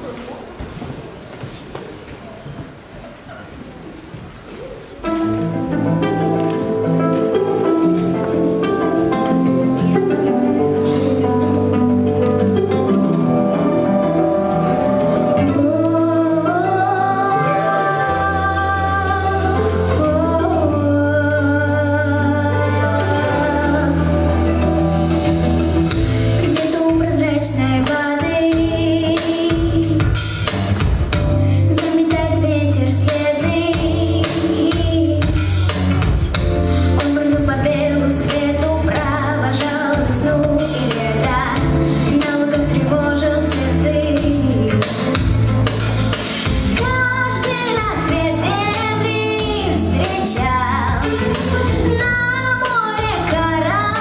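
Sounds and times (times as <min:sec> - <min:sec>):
instrumental music with bass and drums: 0:05.1 - 0:54.0
girl singing: 0:13.5 - 0:24.6, 0:26.4 - 0:30.2, 0:31.7 - 0:35.4, 0:36.9 - 0:45.3, 0:46.7 - 0:54.0.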